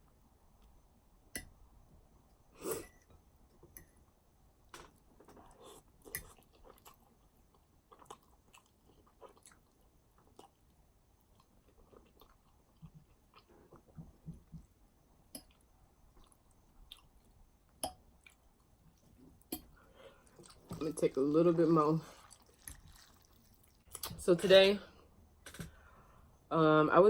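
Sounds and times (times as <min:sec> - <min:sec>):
person chewing: 0:05.4 - 0:10.6, 0:11.3 - 0:13.8, 0:22.2 - 0:24.1.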